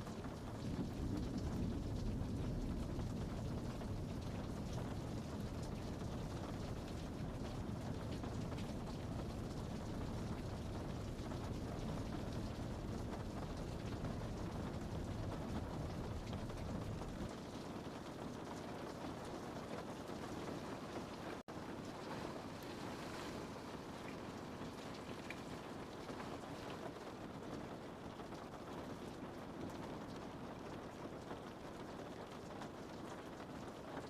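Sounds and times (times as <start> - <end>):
rain on window glass: 0.0 - 34.0.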